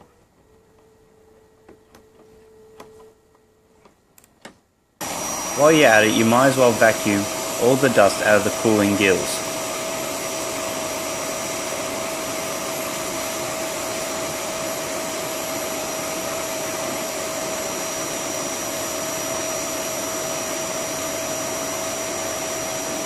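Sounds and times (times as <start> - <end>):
vacuum cleaner whining: 5.0 - 23.0.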